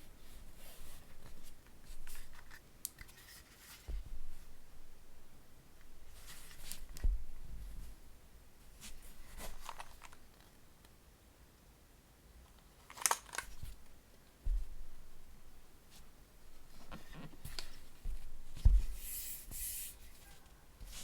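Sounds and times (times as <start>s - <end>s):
deep thud: 14.5s - 14.9s, 18.1s - 19.0s.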